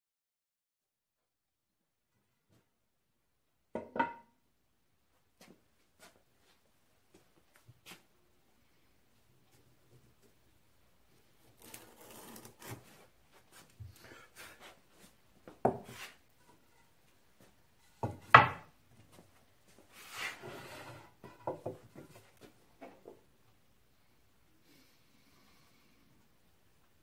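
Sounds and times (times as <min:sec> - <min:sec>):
rubbing and scraping wood: 0:11.6 - 0:18.6, 0:19.7 - 0:23.2
sharp knocks on wood: 0:18.0 - 0:18.7.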